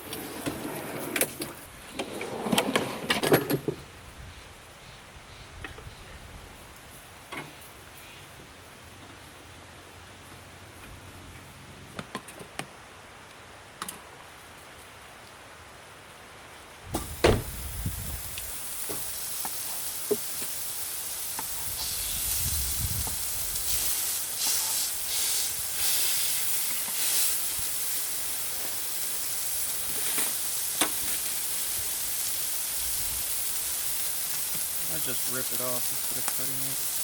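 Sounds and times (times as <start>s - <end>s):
food sizzling in a pan: 17.0s - 37.0s.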